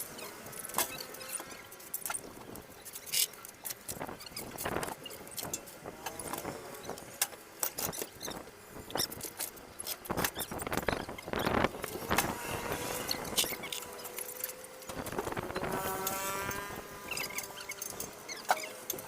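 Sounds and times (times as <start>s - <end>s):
faint squeaks: 7.8s - 14.6s.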